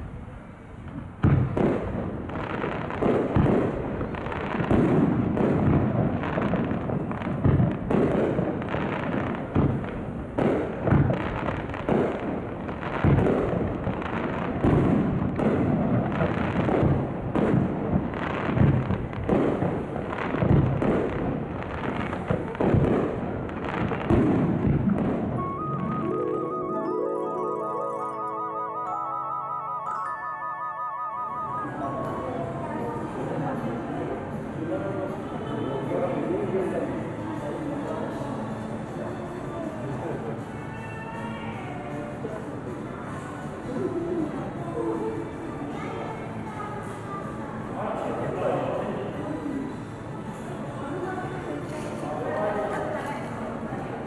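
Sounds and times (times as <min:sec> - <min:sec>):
firework shells booming: 0:00.8 - 0:25.4.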